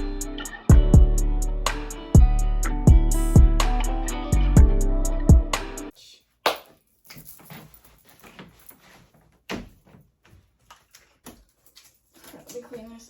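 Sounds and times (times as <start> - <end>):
background music: 0.0 - 5.9.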